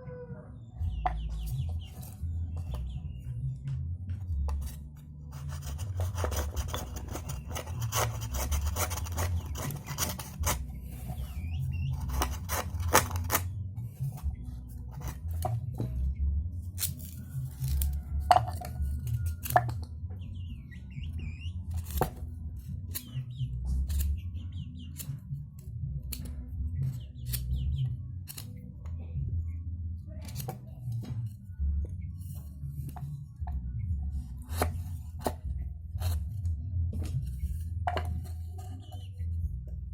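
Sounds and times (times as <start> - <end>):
hand tools scraping bamboo: 4.5 - 15.6, 16.8 - 19.8, 21.7 - 22.2, 34.5 - 36.3
steady low rumble: 27.6 - 39.9.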